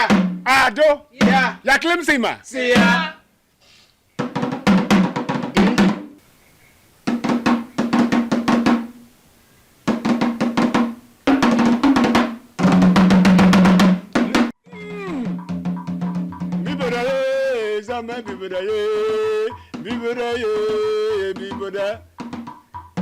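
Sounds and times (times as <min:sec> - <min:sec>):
rapid drum strikes and rolls: 0:00.0 - 0:00.5, 0:04.2 - 0:06.2, 0:07.0 - 0:09.0, 0:09.9 - 0:23.0.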